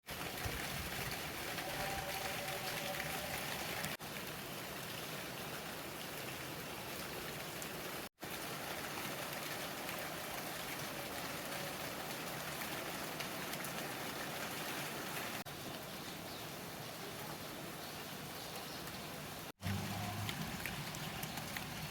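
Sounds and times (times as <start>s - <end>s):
heavy rain falling: 0.0s - 21.9s.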